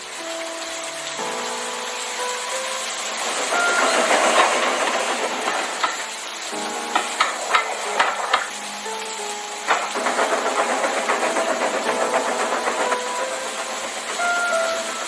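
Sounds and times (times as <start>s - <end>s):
steam hissing: 0.0s - 15.0s
sharp metal clanks: 3.5s - 6.2s, 6.9s - 8.6s.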